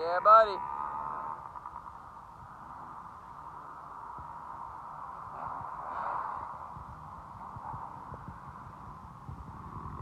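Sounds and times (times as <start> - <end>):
faint dirt bike engines droning: 0.0 - 10.0.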